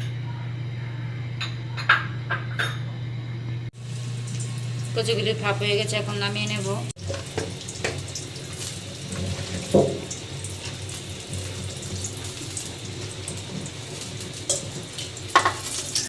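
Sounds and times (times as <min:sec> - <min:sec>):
water running and splashing: 0:03.8 - 0:16.0
kitchen utensils clinking: 0:14.4 - 0:16.0.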